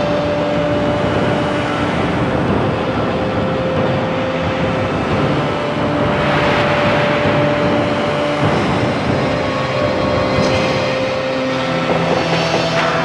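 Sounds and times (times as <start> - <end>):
machine-like noise: 0.0 - 13.0.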